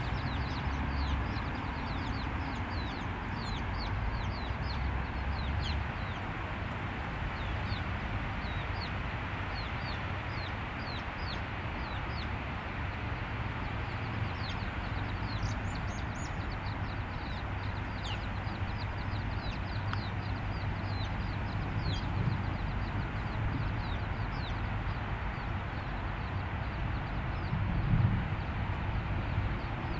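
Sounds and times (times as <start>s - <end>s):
chicks peeping: 0.0s - 13.2s, 14.0s - 22.6s
background rumble: 0.0s - 22.6s.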